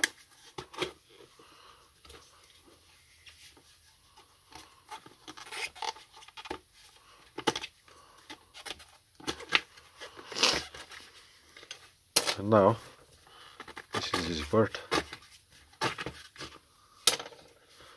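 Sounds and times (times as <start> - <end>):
rubber scraping against plastic: 4.6 - 6.6, 8.4 - 11.3.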